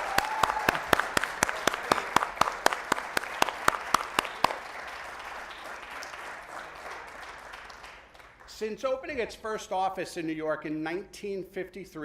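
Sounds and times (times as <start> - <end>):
audience applauding: 0.0 - 8.6.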